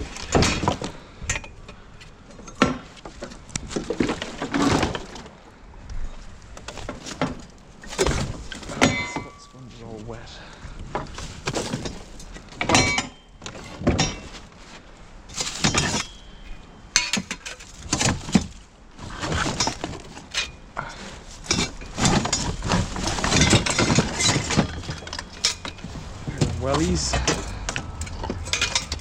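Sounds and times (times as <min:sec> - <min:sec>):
hard objects clattering together: 0:17.0 - 0:29.0.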